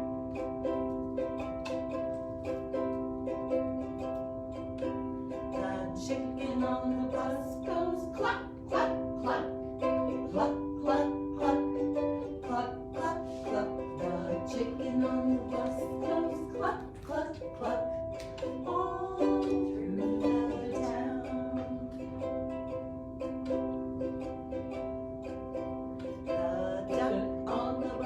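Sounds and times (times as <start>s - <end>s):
ukulele strumming: 0.0s - 28.0s.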